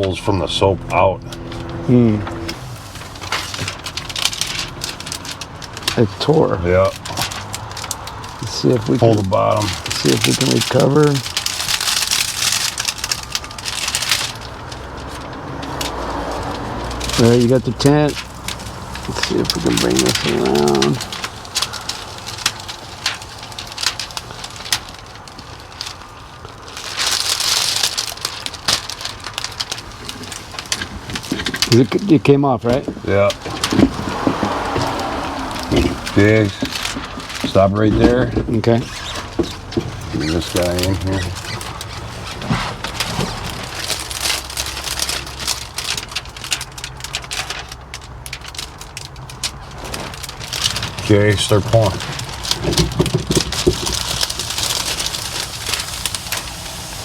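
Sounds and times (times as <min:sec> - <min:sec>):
steady low hum: 0:00.0 - 0:07.4
plastic film crinkling: 0:00.0 - 0:57.0
hiss: 0:54.2 - 0:57.0.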